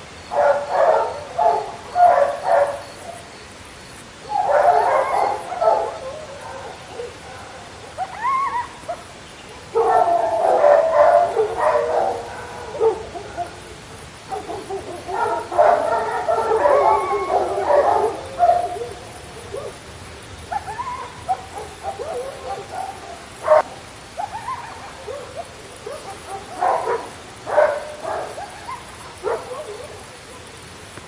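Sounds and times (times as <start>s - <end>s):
dogs yipping and barking: 0.0s - 30.9s
dogs howling: 0.3s - 3.3s, 4.2s - 30.6s.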